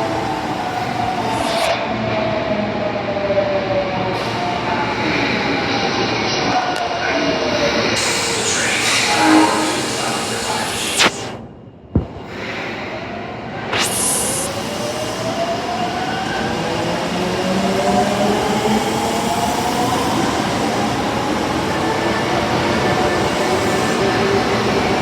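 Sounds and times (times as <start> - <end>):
subway train motor whine: 0.0 - 6.5, 7.6 - 11.4, 13.3 - 25.0
train running noise: 7.5 - 11.4, 12.0 - 25.0
air hiss: 8.0 - 11.4, 13.7 - 15.6.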